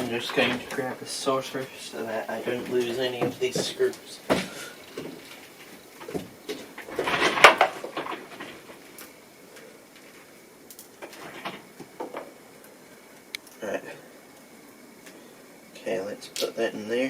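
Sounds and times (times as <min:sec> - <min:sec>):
handling knocks: 0:02.4 - 0:05.2.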